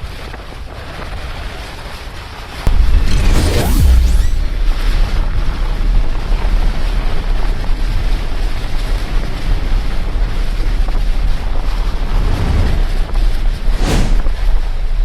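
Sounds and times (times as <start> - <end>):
loud rushing noise: 2.7 - 4.8, 11.9 - 14.4
deep rumble: 2.7 - 5.5, 11.2 - 14.7.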